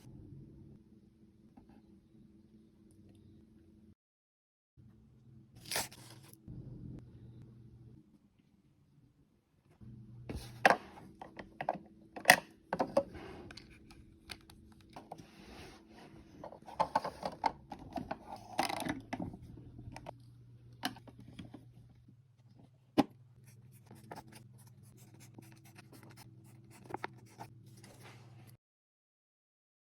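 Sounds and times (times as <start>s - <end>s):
low steady hum: 0.0s - 4.0s, 4.8s - 28.6s.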